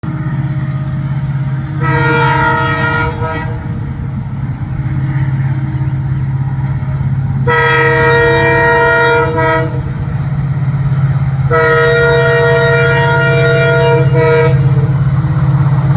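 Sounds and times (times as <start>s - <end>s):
train rumbling: 0.0s - 15.9s
locomotive horn blasts: 1.7s - 4.0s, 7.4s - 10.0s, 11.4s - 15.0s.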